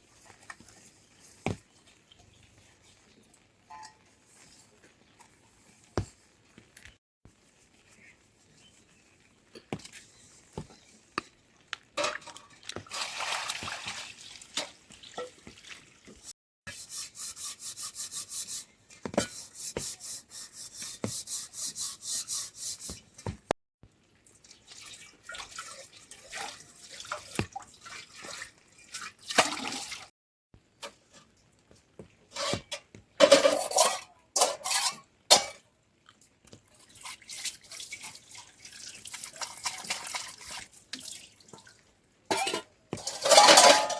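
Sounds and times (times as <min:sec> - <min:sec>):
water splashing and trickling: 0:07.6 - 0:16.4, 0:23.9 - 0:30.1, 0:33.2 - 0:43.9.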